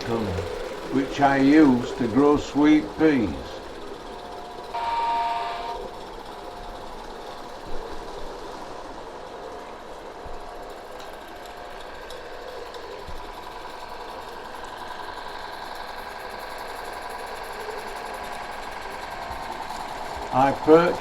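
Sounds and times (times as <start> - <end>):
model locomotive whirring: 0.0 - 21.0
short pitched tone: 4.7 - 5.9.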